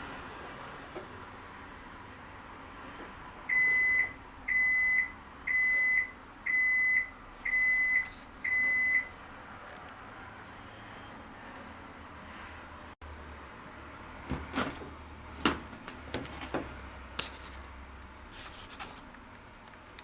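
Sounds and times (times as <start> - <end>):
washing machine beeping: 3.5 - 9.1.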